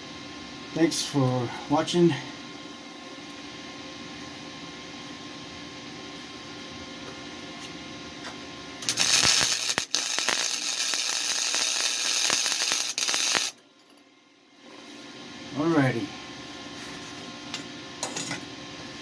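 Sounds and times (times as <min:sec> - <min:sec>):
steady low hum: 0:00.0 - 0:18.0
welding arc crackling and hissing: 0:08.8 - 0:13.6.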